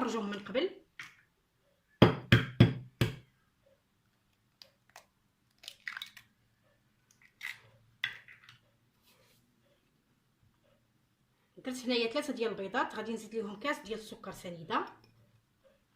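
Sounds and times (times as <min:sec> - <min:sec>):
eggshells crackling: 0:04.9 - 0:06.3.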